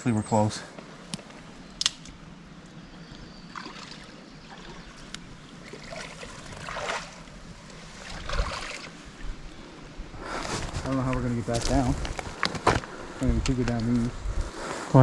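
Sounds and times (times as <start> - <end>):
mountain brook flowing: 3.5 - 9.8
scuffing and splashing: 7.9 - 9.0.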